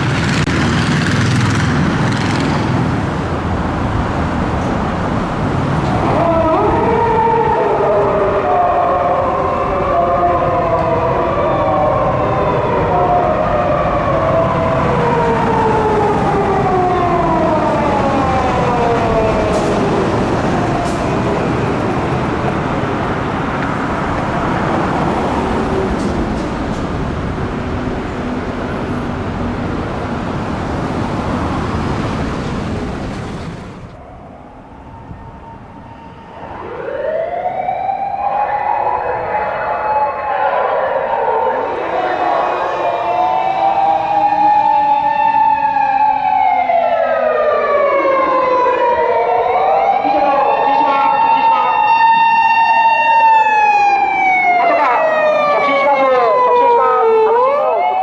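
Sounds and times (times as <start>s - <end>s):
loud steady rushing noise: 0.0s - 6.9s
police car siren: 3.8s - 29.4s, 30.3s - 58.0s.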